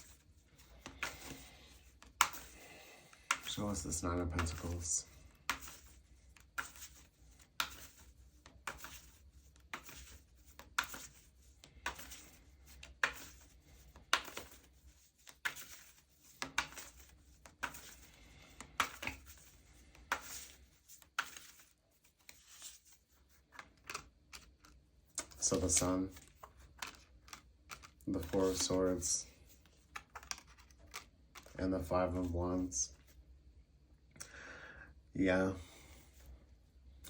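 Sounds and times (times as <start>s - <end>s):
cards being shuffled: 0.0s - 33.2s.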